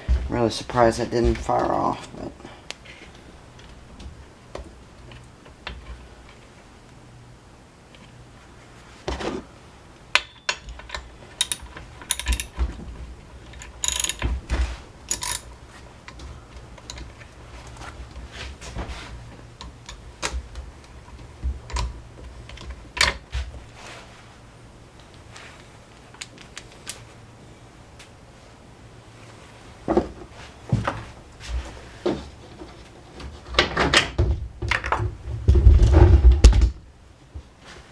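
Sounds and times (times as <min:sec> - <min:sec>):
metal tools clattering: 0:10.2 - 0:12.6
ratchet clicking: 0:11.4 - 0:12.5, 0:13.6 - 0:14.2, 0:15.1 - 0:15.5.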